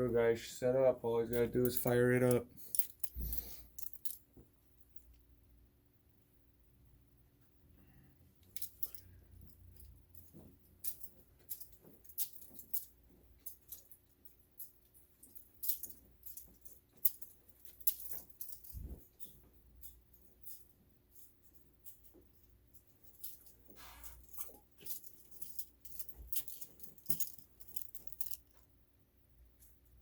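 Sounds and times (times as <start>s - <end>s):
small metallic rattles: 1.3s - 5.2s, 8.4s - 28.8s.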